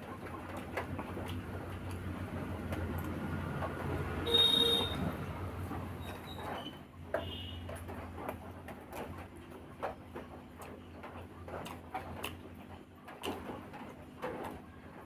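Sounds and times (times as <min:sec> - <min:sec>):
wet chewing and mouth smacks: 0:00.6 - 0:02.1.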